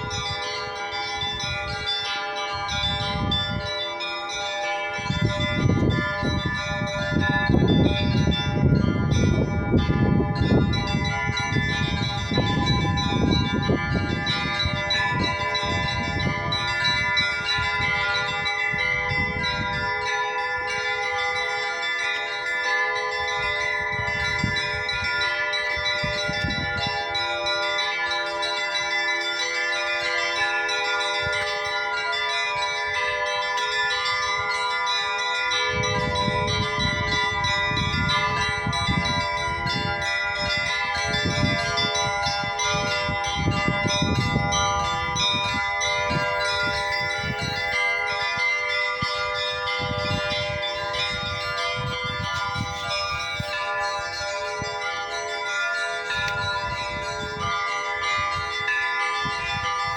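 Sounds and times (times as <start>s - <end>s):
church bells pealing: 0.0s - 59.9s.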